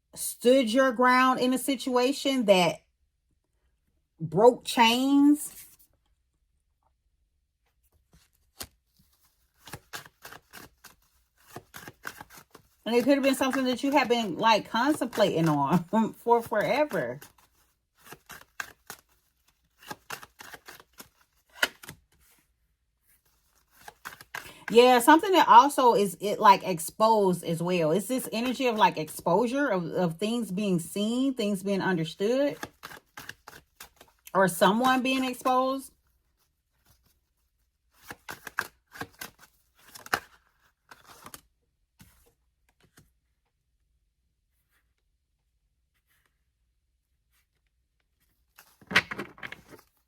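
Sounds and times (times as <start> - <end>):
cards being shuffled: 7.9 - 14.0, 16.5 - 22.4, 23.2 - 24.7, 37.9 - 41.4, 48.5 - 50.0.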